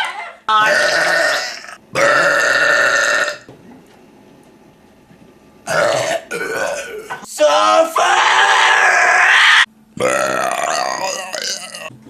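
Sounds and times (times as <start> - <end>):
loud burps: 0.5 - 3.5, 5.7 - 7.2, 10.0 - 11.9.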